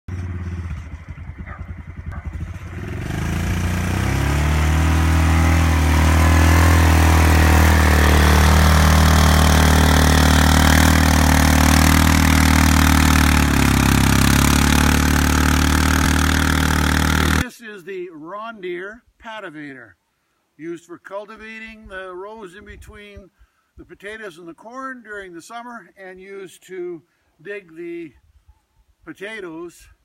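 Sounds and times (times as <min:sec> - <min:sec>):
atv engine idling and revving: 0:00.1 - 0:17.4.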